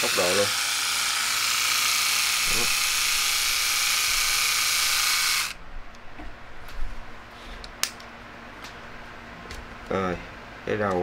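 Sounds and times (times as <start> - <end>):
shaver motor high-pitched whirr: 0.0 - 5.6.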